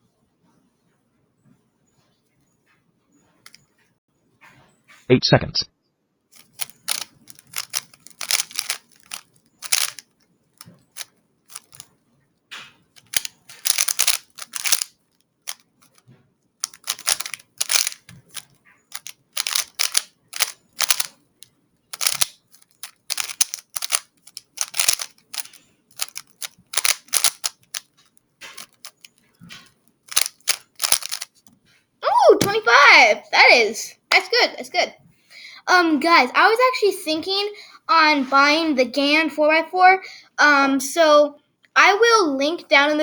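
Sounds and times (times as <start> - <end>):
plastic puzzle cube clicking: 6.4 - 11.8, 13.0 - 14.9, 15.5 - 16.0, 16.6 - 21.2, 21.9 - 31.6.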